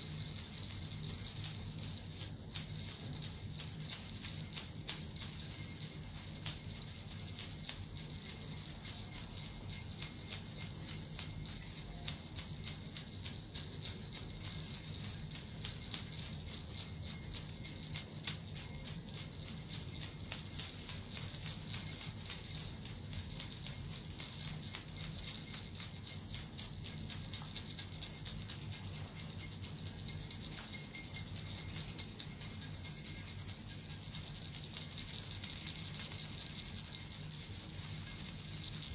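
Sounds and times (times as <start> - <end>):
small jingling bells shaken: 0.0 - 38.9.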